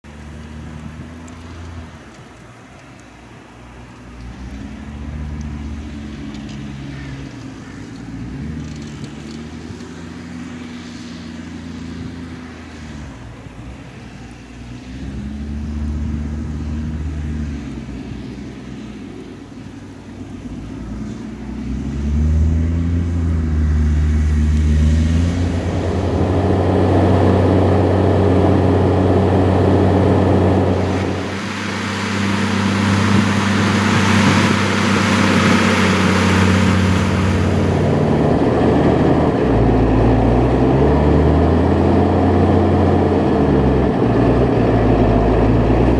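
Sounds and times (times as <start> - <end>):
tractor diesel engine under load: 0.0 - 45.9.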